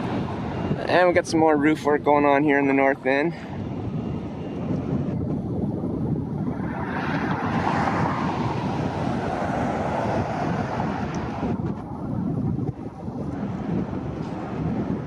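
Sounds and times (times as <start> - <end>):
wind rumbling on microphone: 0.0 - 15.0
passing vehicle rushing: 3.6 - 15.0.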